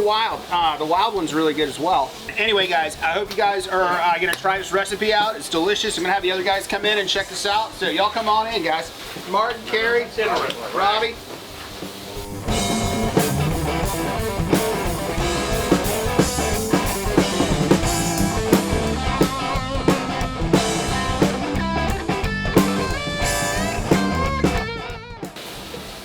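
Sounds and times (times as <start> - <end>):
drum kit beat: 0.0 - 26.0
electric guitar: 11.9 - 26.0
bass guitar: 12.0 - 26.0.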